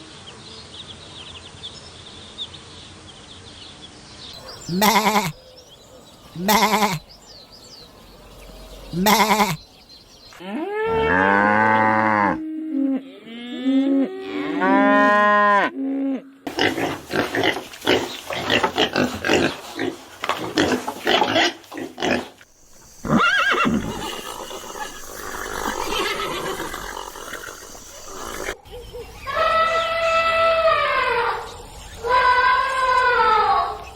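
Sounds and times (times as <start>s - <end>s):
farm animal calls: 4.4s - 33.9s.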